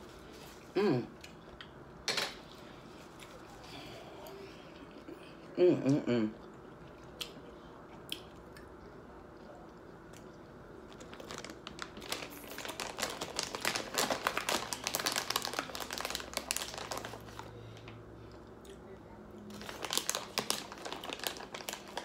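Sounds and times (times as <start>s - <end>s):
taco crunching while chewed: 5.8s - 18.8s, 19.4s - 22.0s.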